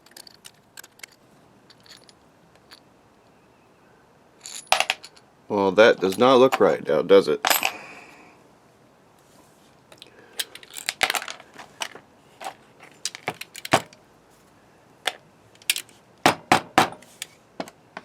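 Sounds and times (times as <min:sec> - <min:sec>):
small hard parts clicking and clinking: 0:00.0 - 0:02.9, 0:09.9 - 0:14.0, 0:15.0 - 0:16.0.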